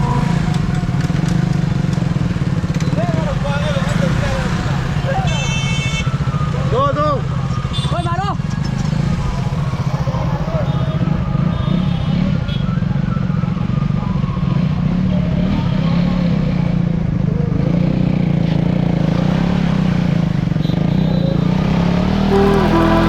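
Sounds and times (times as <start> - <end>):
motorcycle engine revving high: 22.3 - 23.0.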